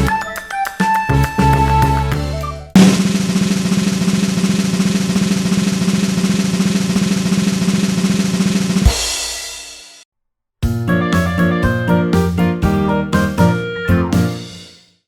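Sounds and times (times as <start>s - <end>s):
cymbal crash: 2.8s - 10.0s
snare drum roll: 2.8s - 10.0s.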